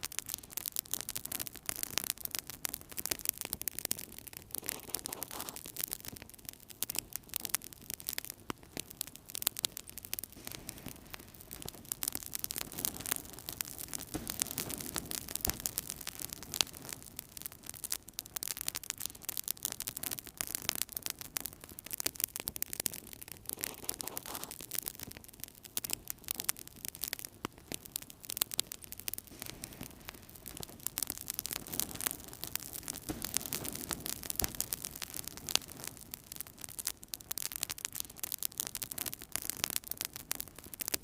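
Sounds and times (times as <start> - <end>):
wood fire crackling and popping: 0.0 - 41.0
low rumble of flames: 0.1 - 41.0.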